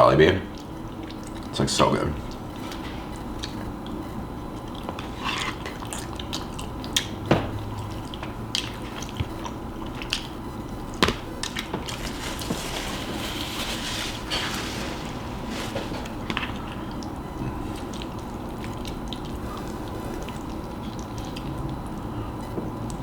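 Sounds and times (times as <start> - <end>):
chewing and mouth clicks: 0.5 - 1.6, 2.2 - 11.7, 16.0 - 23.0.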